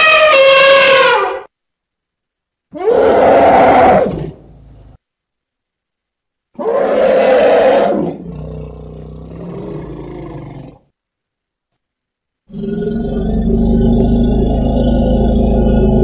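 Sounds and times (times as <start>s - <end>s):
elephant roaring: 2.8s - 4.6s, 6.6s - 10.8s, 12.5s - 16.0s.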